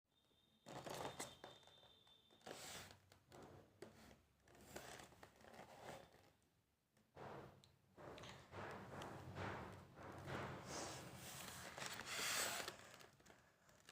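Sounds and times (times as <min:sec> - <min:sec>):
rustling and crinkling: 0:08.0 - 0:13.9.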